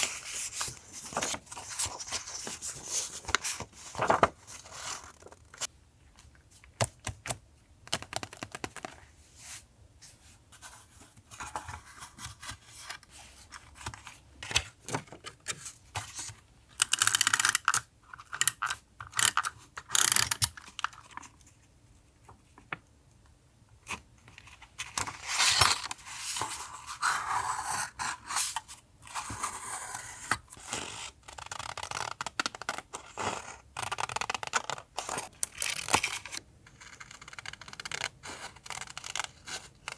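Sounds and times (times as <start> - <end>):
paper rustling and crinkling: 0.0 - 5.7.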